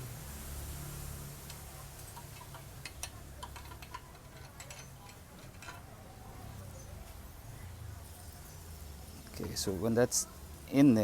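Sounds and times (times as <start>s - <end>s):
metal parts clicking and tapping: 1.5s - 6.0s.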